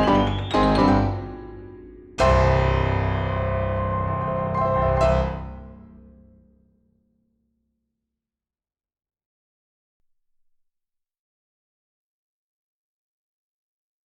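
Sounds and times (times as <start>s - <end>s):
piano music: 0.0s - 6.2s.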